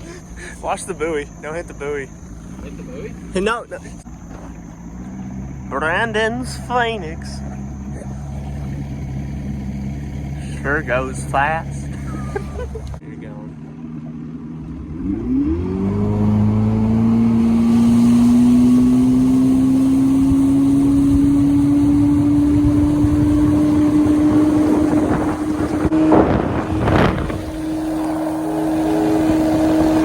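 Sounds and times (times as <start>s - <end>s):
outboard motor throttling up: 0.0s - 30.0s
loud rushing bursts: 17.4s - 30.0s.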